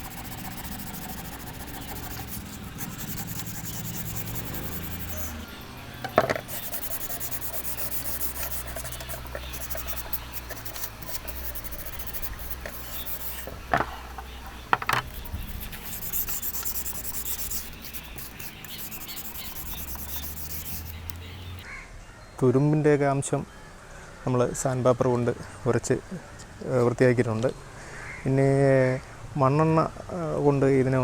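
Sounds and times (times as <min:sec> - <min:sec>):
sandpaper rubbing on metal: 0:00.0 - 0:05.5, 0:06.2 - 0:14.2, 0:15.0 - 0:21.6.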